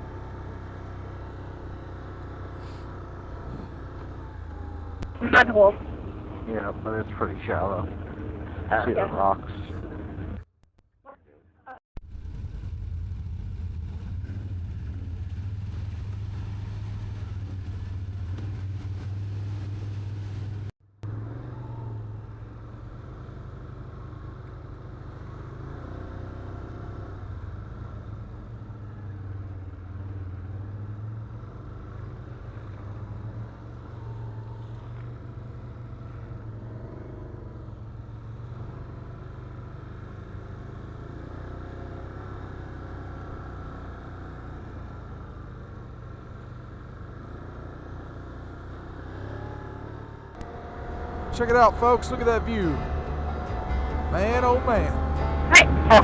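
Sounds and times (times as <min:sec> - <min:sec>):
atv engine droning: 0:00.0 - 0:10.4, 0:13.3 - 0:56.0.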